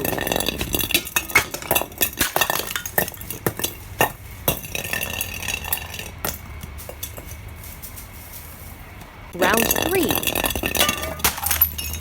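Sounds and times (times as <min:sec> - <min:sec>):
glass bottles breaking: 0:00.0 - 0:06.5, 0:09.4 - 0:12.0.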